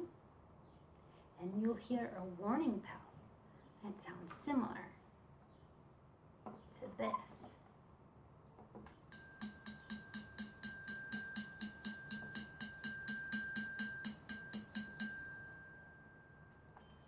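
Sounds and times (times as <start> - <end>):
small metal bell struck rapidly: 9.1 - 17.0.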